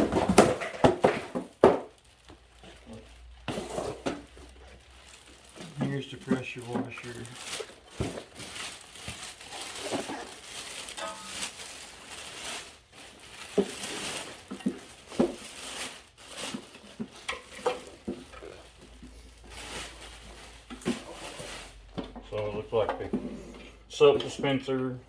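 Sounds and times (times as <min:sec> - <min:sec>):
knocks and thumps: 0:00.0 - 0:01.9
cardboard and plastic rustling: 0:00.0 - 0:24.6.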